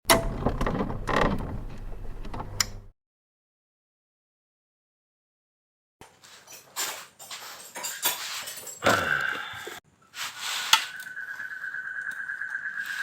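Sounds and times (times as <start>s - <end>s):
metal tools clinking: 6.2s - 9.3s
high-pitched whine: 10.8s - 13.0s.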